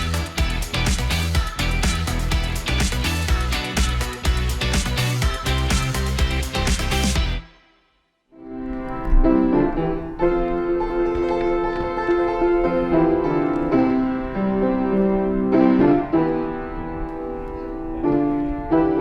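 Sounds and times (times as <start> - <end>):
melodic instrumental music: 0.0 - 7.6.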